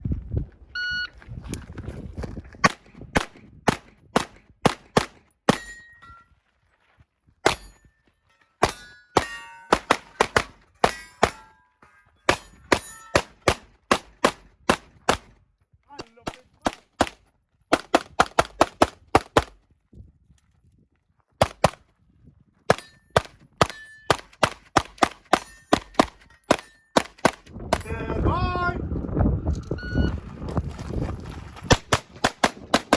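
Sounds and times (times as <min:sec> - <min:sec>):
pistol shots: 0:02.6 - 0:05.8, 0:08.6 - 0:11.4, 0:12.3 - 0:15.4, 0:22.7 - 0:27.5
steel targets ringing: 0:05.5 - 0:06.2, 0:07.6 - 0:10.2, 0:10.8 - 0:13.3.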